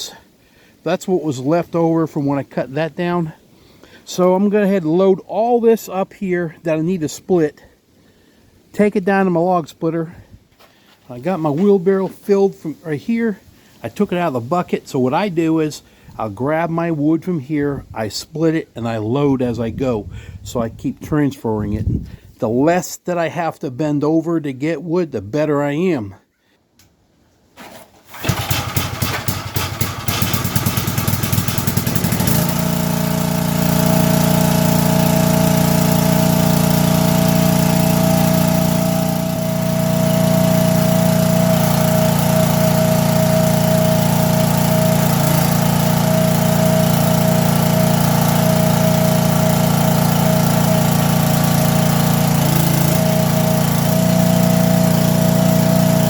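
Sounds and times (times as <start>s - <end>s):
small engine starting up: 27.9s - 56.0s.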